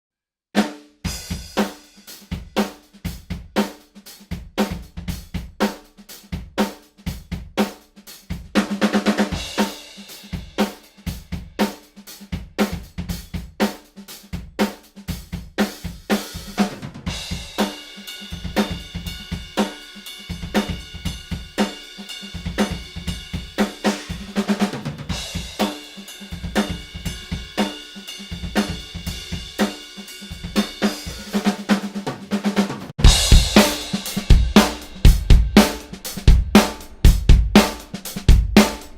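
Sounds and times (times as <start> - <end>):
drum kit groove: 0.6 - 38.9
cymbal crashes: 33.0 - 38.9.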